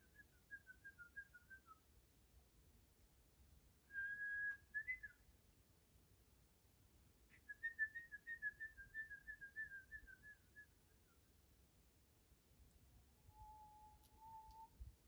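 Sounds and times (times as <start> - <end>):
thin high whistle: 13.3 - 14.9.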